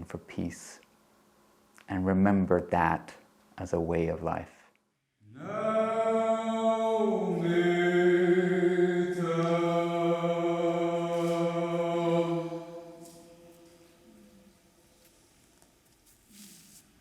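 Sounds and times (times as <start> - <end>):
person singing long held notes: 5.3 - 14.3.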